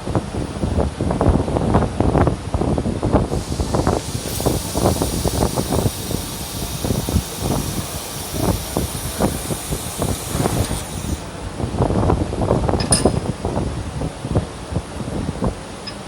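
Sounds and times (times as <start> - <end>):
hiss of gas flow: 3.2 - 11.4.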